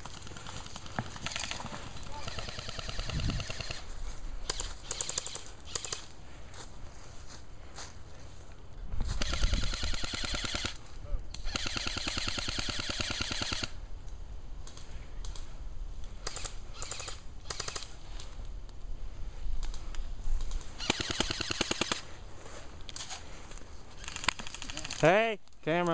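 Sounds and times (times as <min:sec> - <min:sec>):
airsoft guns firing full-auto: 0:00.0 - 0:03.8, 0:09.2 - 0:10.8, 0:11.4 - 0:13.8, 0:20.8 - 0:22.1.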